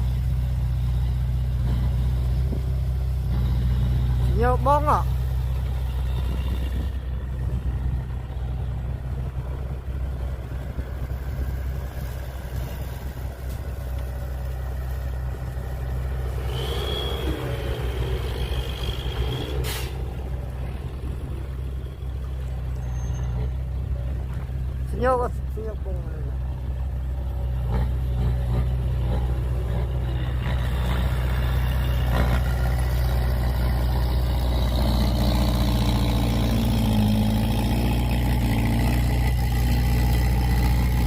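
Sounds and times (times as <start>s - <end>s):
diesel machinery engine idling: 0.0s - 41.0s
short sharp hiss: 19.6s - 20.0s.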